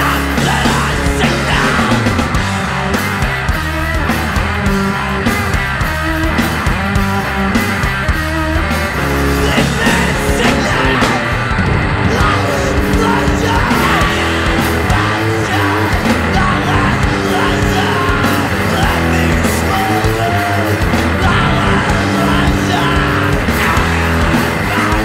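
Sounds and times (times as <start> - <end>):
shouted vocals: 0.0 - 2.3, 9.3 - 25.0
punk band playing: 0.0 - 25.0.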